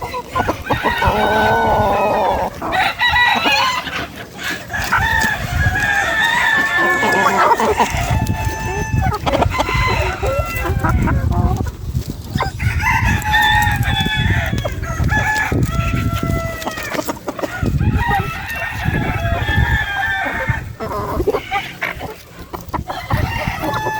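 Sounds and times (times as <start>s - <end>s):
chickens clucking: 0.0s - 23.9s
rooster crowing: 0.4s - 3.9s, 4.7s - 11.3s, 12.6s - 16.9s, 17.5s - 20.8s, 22.9s - 23.9s.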